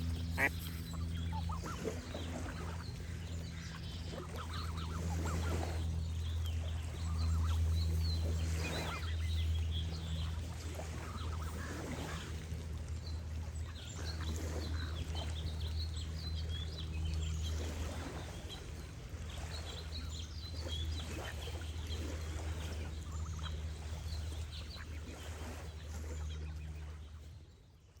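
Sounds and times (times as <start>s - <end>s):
geese honking: 0.0s - 2.8s
small birds chirping: 0.0s - 5.5s
low water rumble: 0.0s - 28.0s.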